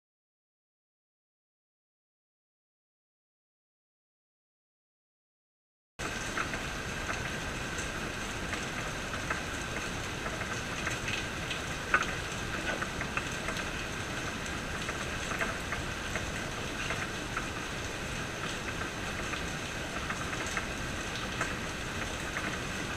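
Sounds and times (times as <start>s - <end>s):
rain falling: 6.0s - 22.9s.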